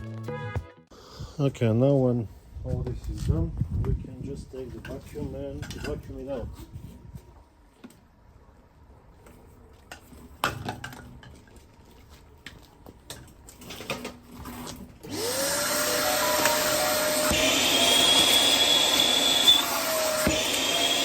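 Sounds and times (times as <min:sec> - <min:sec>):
vacuum cleaner running: 0:15.0 - 0:21.0.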